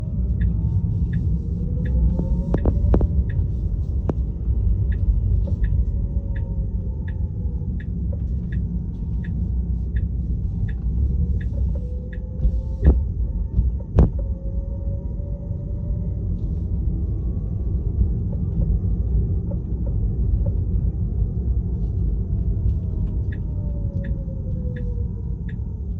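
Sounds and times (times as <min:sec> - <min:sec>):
low road rumble: 0:00.0 - 0:25.9
light ticking: 0:00.2 - 0:13.0, 0:22.7 - 0:25.7.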